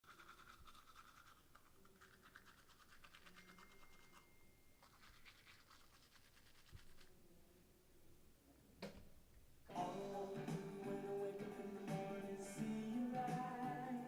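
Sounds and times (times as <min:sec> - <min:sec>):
faint quick scratching: 0:00.0 - 0:04.2, 0:04.8 - 0:07.2.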